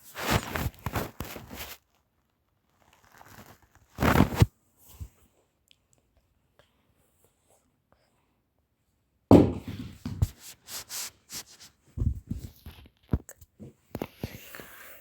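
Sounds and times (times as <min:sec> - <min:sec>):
loud handling thump: 0:09.3 - 0:09.9
handling knocks and rustles: 0:09.3 - 0:13.9.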